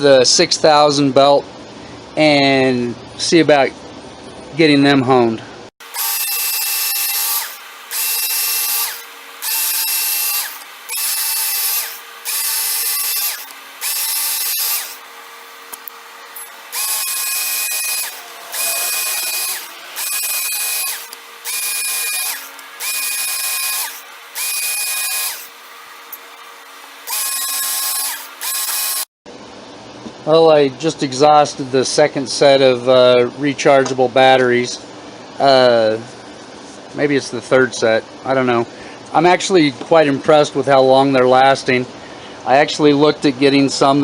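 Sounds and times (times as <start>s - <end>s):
electric belt sharpener motor: 5.8s - 29.1s.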